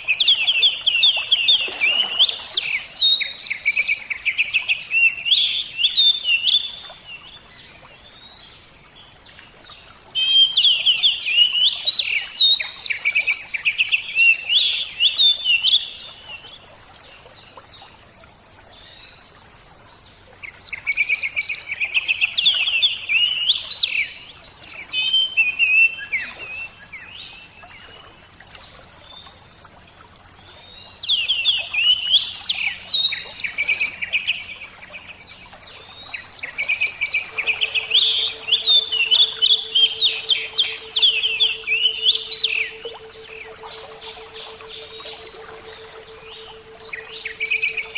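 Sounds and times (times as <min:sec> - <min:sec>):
bird chirping: 0:36.2 - 0:47.9.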